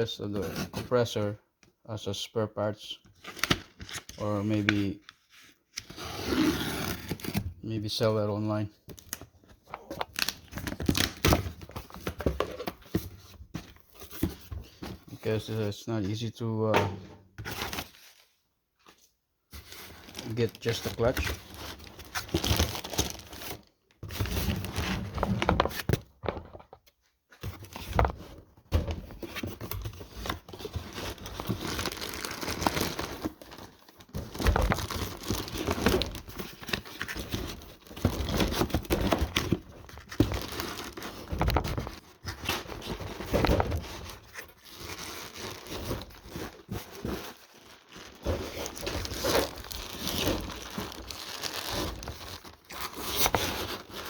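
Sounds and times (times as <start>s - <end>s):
packaging crinkling and tearing: 9.0s - 12.0s, 19.8s - 25.9s, 29.8s - 54.0s.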